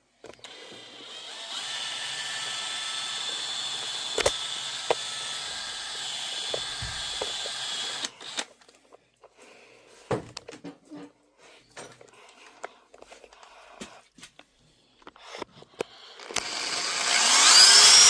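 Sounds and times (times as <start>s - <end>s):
power drill drilling into plexiglass: 0.4s - 8.5s, 15.3s - 18.0s
sharp clicks: 3.8s - 5.1s.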